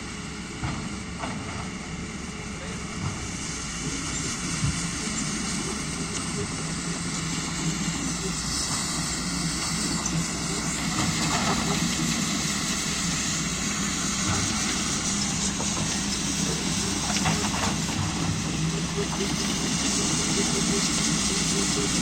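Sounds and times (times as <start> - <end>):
excavator diesel engine running: 0.0 - 22.0
high wavering whine: 11.7 - 22.0.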